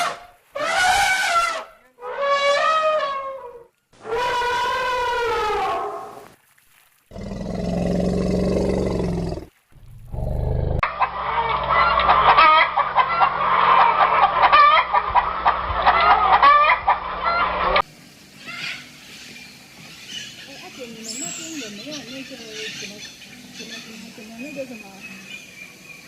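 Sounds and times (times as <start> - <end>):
flock of fowl calling: 10.8 - 17.8.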